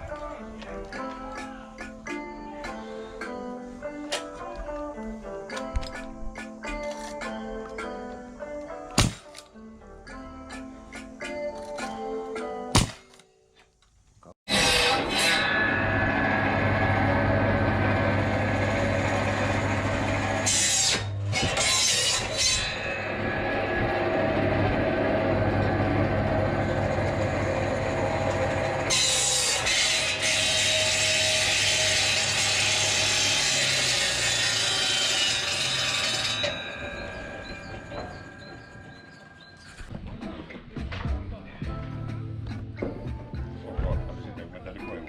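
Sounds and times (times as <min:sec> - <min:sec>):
motor hum: 0:15.5 - 0:21.4, 0:22.7 - 0:29.4.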